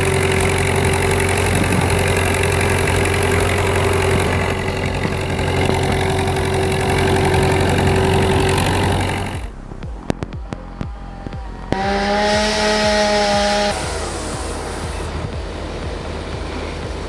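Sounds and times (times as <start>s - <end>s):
tractor diesel engine running: 0.0s - 10.1s
steady whine: 0.0s - 17.0s.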